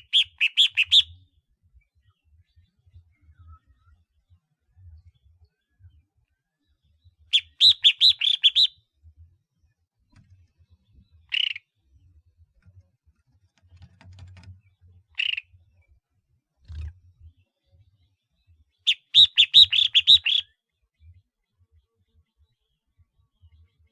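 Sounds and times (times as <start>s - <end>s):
bird calling: 0.0s - 1.1s, 7.3s - 8.7s, 11.3s - 11.6s, 18.9s - 20.5s.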